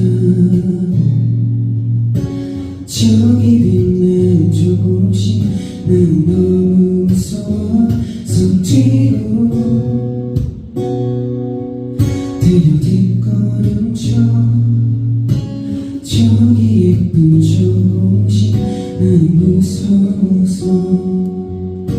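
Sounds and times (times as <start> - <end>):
strummed acoustic guitar: 0.0 - 21.9.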